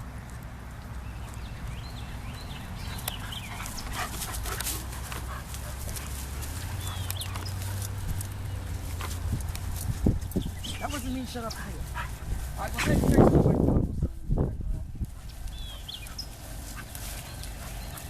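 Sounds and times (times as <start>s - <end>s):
light clicks and rustles: 2.9s - 13.0s.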